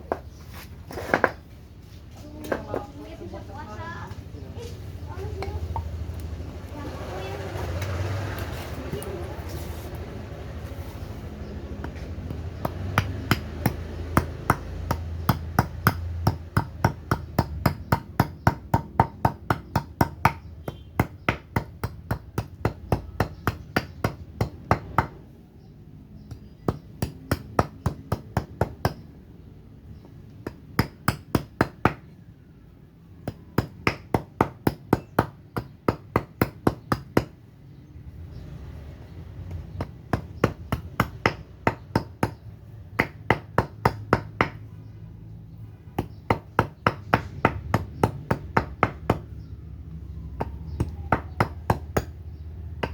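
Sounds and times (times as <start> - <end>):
axe chopping wood: 11.7 - 25.2, 26.3 - 29.1, 33.2 - 37.3, 39.4 - 44.6, 50.4 - 52.9.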